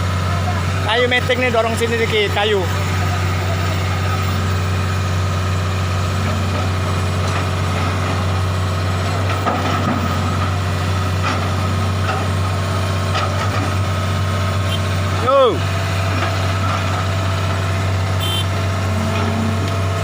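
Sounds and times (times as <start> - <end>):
diesel engine droning: 0.0 - 20.0.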